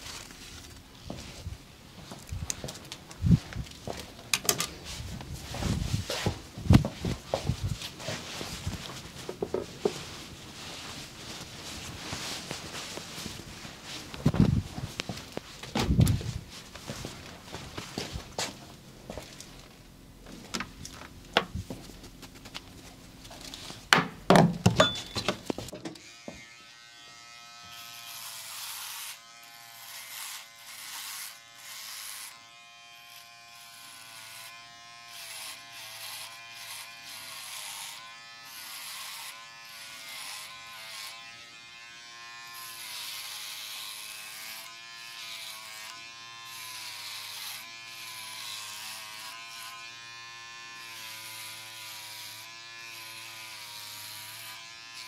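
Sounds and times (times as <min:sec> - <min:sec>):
electric hair clippers buzzing: 0:25.0 - 0:55.0.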